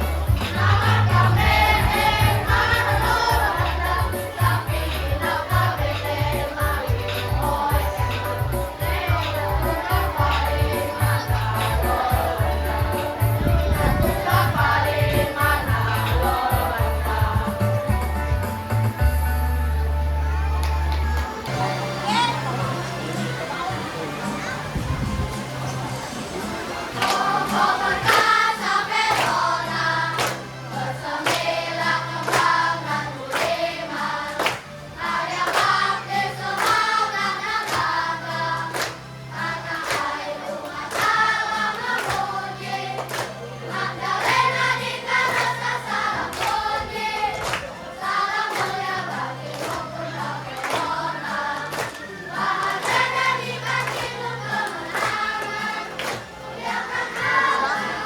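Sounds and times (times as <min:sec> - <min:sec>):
children's choir singing: 0:00.0 - 0:58.0
instrumental accompaniment with beat: 0:00.0 - 0:58.0.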